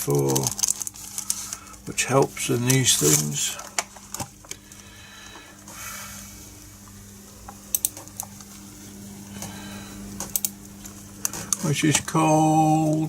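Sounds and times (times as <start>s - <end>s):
steady low hum: 0.0s - 13.0s
computer keyboard clicking: 7.7s - 8.0s, 10.2s - 10.6s.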